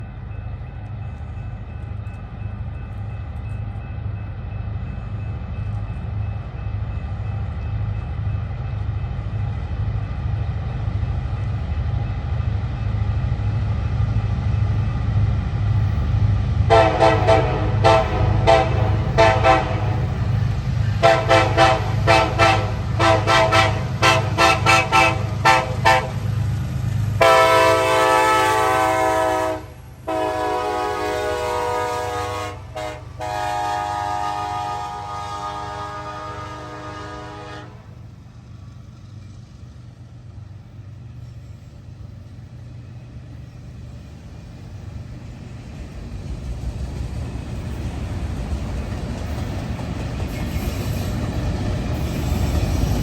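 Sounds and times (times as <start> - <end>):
diesel locomotive rumbling: 0.0 - 53.0
locomotive air horn: 16.7 - 20.2, 21.0 - 26.3, 27.2 - 38.0.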